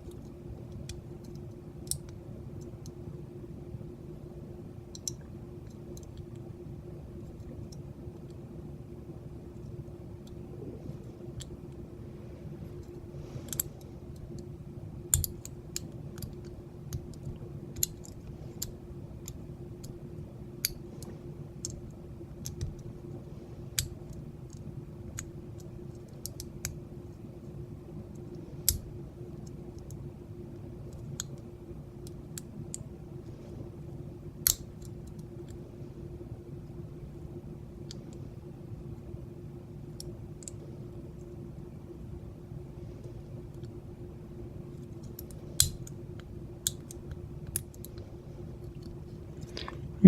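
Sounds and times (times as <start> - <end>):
steady low hum: 0.0 - 50.0
lock pick metallic clicks: 15.1 - 20.0.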